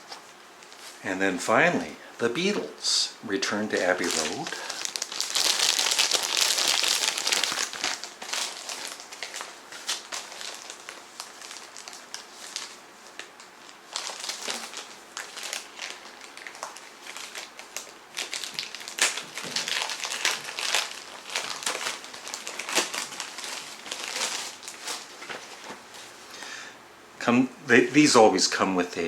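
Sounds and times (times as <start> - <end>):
packaging crinkling: 3.6 - 26.3.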